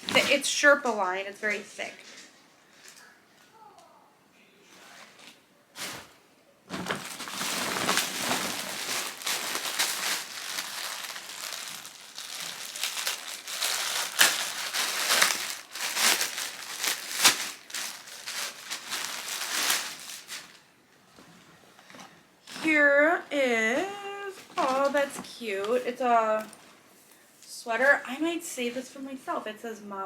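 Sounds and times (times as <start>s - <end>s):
packaging crinkling: 6.7s - 20.6s.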